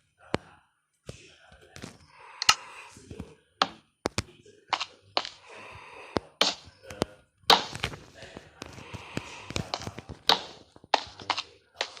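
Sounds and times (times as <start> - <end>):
sharp taps and knocks: 3.6 - 5.4, 6.2 - 8.0, 8.6 - 12.0.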